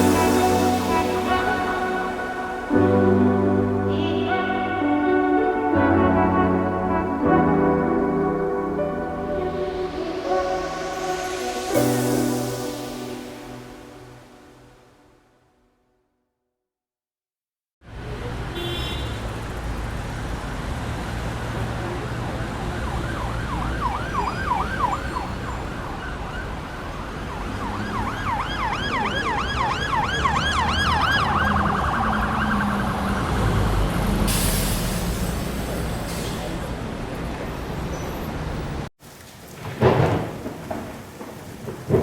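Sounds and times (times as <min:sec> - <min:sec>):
low rumble of traffic: 0:17.8 - 0:42.0
emergency siren yelping: 0:22.3 - 0:33.9
short hiss: 0:34.2 - 0:36.5.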